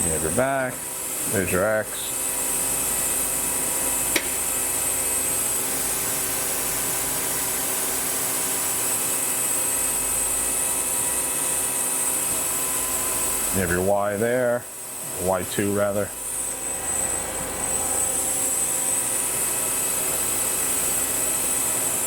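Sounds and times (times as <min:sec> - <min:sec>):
lathe whining: 0:00.0 - 0:22.0
sharp click: 0:04.1 - 0:04.4.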